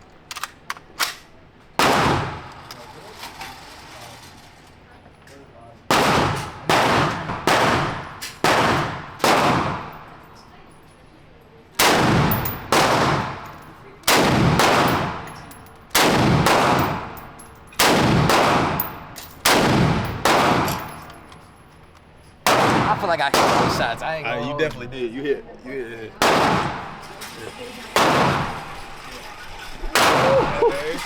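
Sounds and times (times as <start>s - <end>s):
echoing gunshots: 1.8s - 2.5s, 5.9s - 10.1s, 11.8s - 21.1s, 22.4s - 24.2s, 26.2s - 27.1s, 27.9s - 28.9s, 30.0s - 30.6s.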